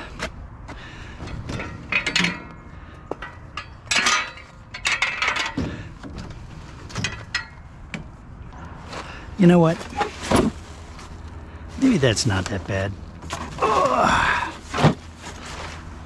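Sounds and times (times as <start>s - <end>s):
scrap metal clattering: 1.2s - 7.9s.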